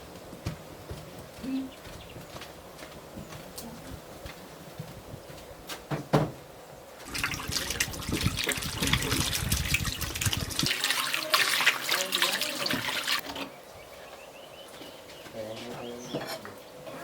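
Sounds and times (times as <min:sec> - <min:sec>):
water running and splashing: 0:07.0 - 0:13.4.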